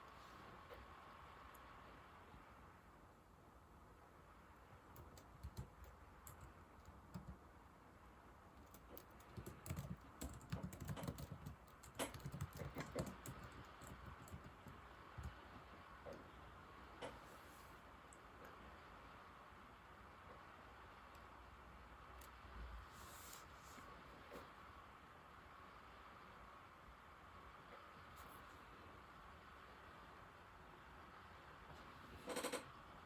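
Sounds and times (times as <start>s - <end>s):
laptop keyboard typing: 4.7s - 7.5s, 8.6s - 16.3s, 32.2s - 32.7s.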